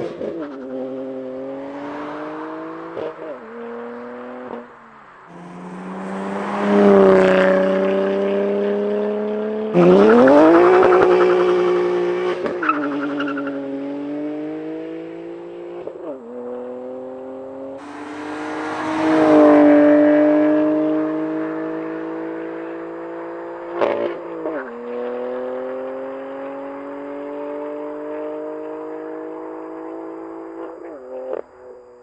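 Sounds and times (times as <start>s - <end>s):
car accelerating past: 0.0s - 32.0s.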